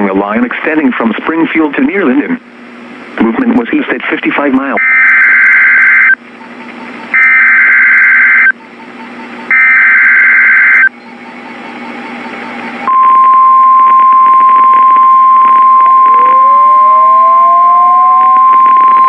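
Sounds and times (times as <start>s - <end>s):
radio hiss: 3.2s - 6.1s
harsh data bursts: 4.8s - 6.2s, 7.1s - 8.5s, 9.5s - 10.9s
steady warning alarm tone: 4.8s - 6.2s, 7.1s - 8.6s, 9.5s - 11.0s, 14.2s - 19.0s
rising tone: 12.8s - 19.0s.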